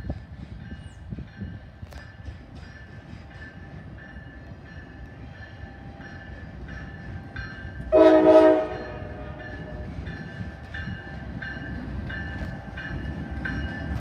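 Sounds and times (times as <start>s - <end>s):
diesel locomotive rumbling past: 0.0s - 14.0s
locomotive air horn blast: 7.9s - 9.8s.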